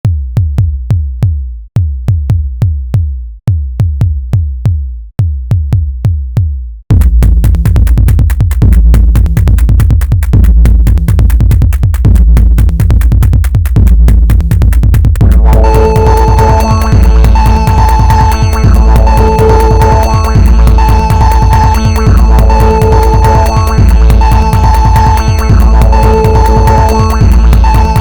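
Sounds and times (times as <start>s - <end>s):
drum machine bass hits: 0.0s - 28.0s
electronic dance beat: 6.9s - 28.0s.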